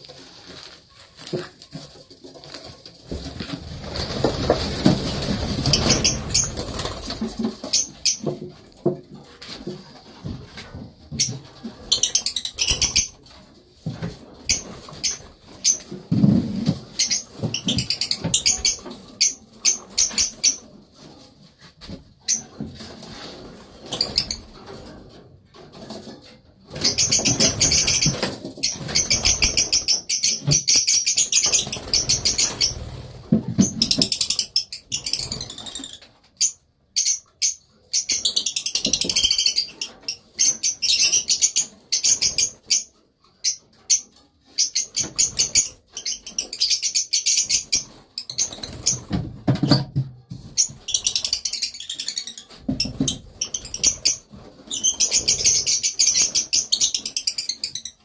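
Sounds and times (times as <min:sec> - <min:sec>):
wing flutters and rustling: 0:00.0 - 0:30.3
small parrots chirping: 0:05.5 - 0:08.3, 0:11.2 - 0:13.2, 0:16.9 - 0:20.7, 0:26.7 - 0:32.9, 0:33.6 - 0:49.1, 0:50.5 - 0:58.0.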